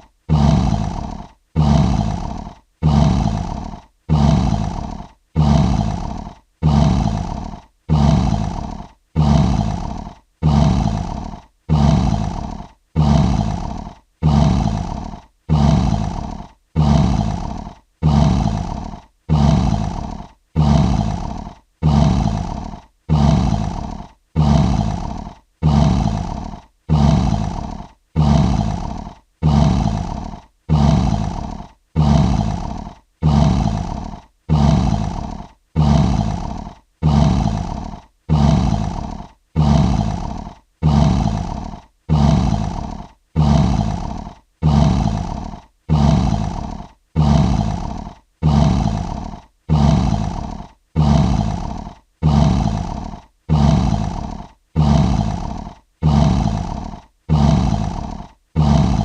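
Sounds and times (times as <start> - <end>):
lion roaring: 0.3 - 59.0.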